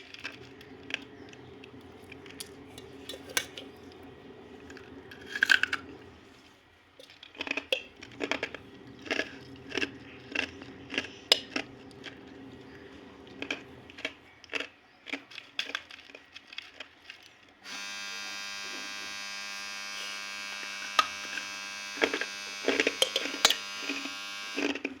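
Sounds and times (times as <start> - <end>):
dry clay crunching and cracking: 13.4 - 17.6
steady electric buzz: 17.7 - 24.9.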